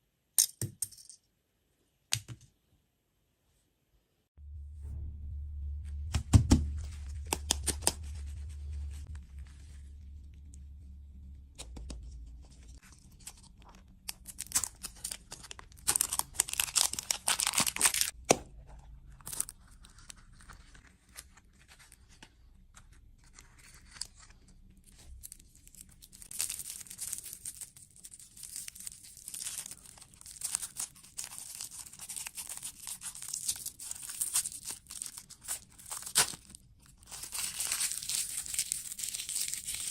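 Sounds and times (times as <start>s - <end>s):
low hum: 4.4s - 20.8s
wrapping torn and crinkled: 11.6s - 18.2s, 19.0s - 39.9s.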